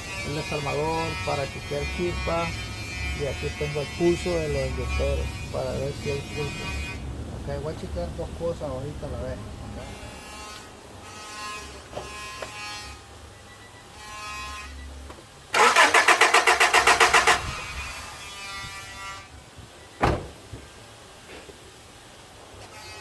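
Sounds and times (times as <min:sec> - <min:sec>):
car engine cranking: 0:15.5 - 0:18.3.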